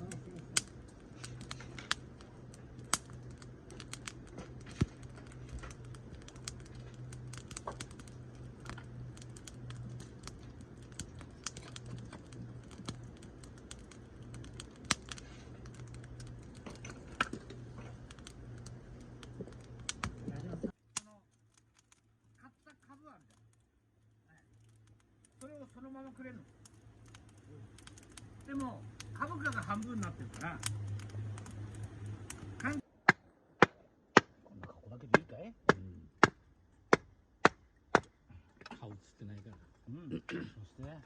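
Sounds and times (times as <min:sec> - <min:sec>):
steady low hum: 0:00.0 - 0:22.4
campfire crackling and popping: 0:00.0 - 0:41.0.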